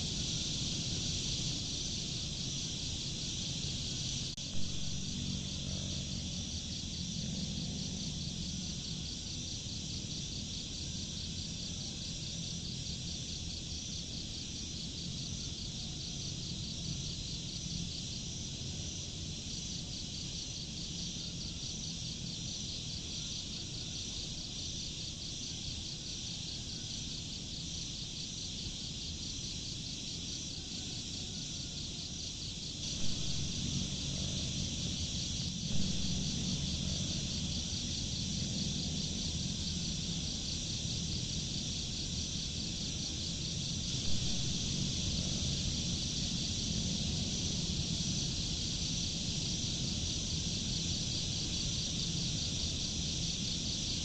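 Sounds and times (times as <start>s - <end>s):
crickets and insects trilling: 0.0s - 54.0s
low rumble: 32.9s - 40.0s, 43.8s - 48.0s.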